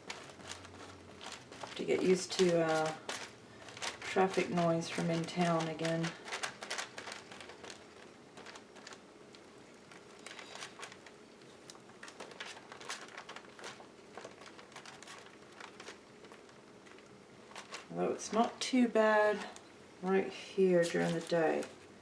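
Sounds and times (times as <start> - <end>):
paper rustling and crinkling: 0.0 - 18.6, 20.7 - 21.9.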